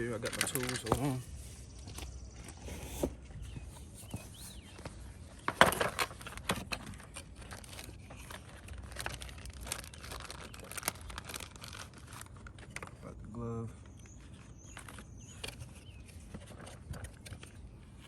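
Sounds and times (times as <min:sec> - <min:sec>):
tools being handled: 0:00.2 - 0:01.2.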